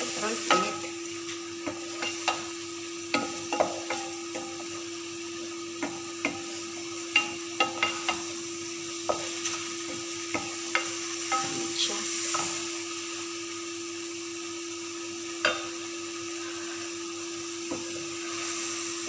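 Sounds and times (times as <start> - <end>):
chicken sizzling in a pan: 0.0 - 19.0
steady hum: 0.0 - 19.0
spatula scraping a pan: 0.1 - 4.8, 5.8 - 8.4, 9.0 - 12.9.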